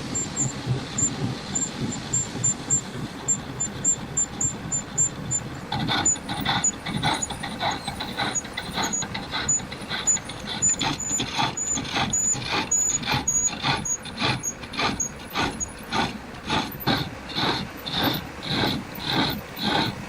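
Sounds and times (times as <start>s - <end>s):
hand tool rasping metal: 5.7s - 20.0s.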